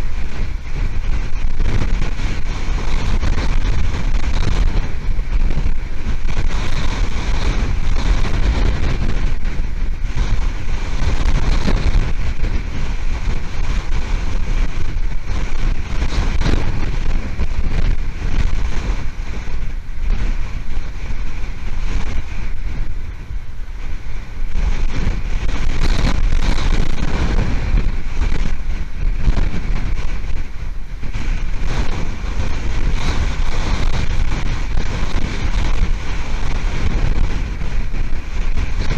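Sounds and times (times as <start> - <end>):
wind blasting microphone: 0.0 - 38.9.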